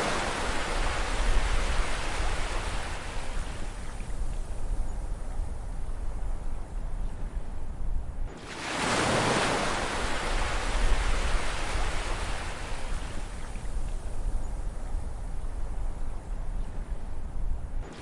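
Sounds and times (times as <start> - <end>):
low rumble of sea: 0.0 - 18.0
wave breaking with rushing surf: 8.4 - 13.0.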